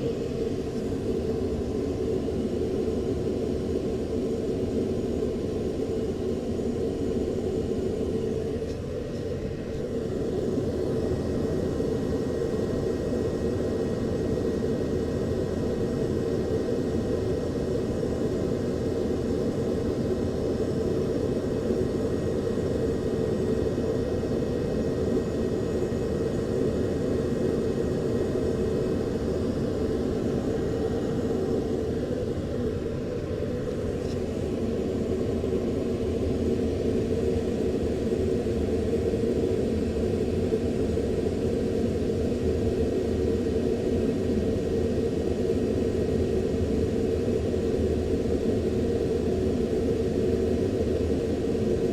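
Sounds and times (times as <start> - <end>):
jet aircraft rumble: 26.4 - 38.4.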